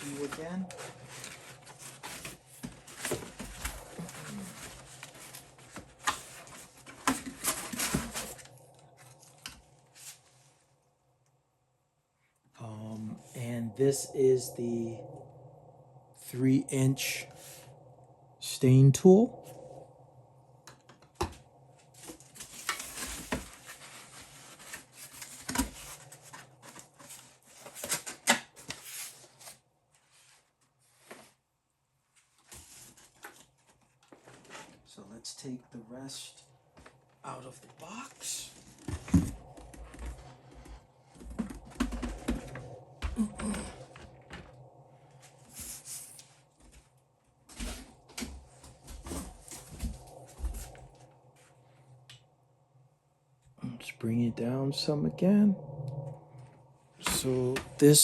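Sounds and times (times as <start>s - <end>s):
packaging rustling and crinkling: 0.0s - 10.3s, 21.9s - 31.3s.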